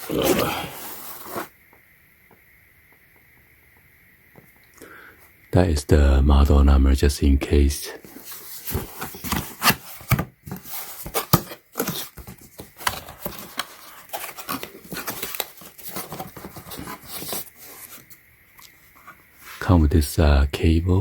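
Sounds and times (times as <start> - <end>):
packaging rustling and crinkling: 0.0 - 1.5, 8.1 - 18.2.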